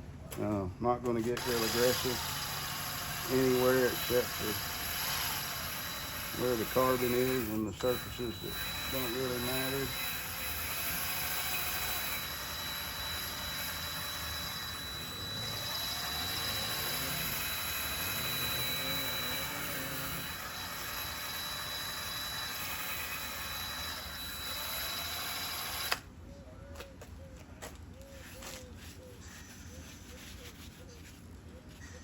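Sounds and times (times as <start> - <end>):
wire wheel whining: 1.4 - 26.0.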